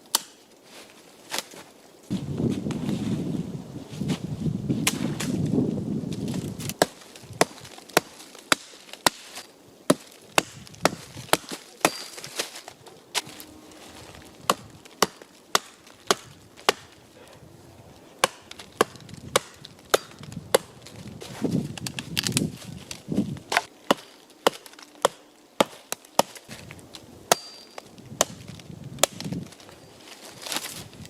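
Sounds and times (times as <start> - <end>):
wood being chopped: 0.1 - 0.4, 6.3 - 13.3, 14.4 - 17.0, 18.2 - 20.8, 21.7 - 26.5, 27.3 - 29.6.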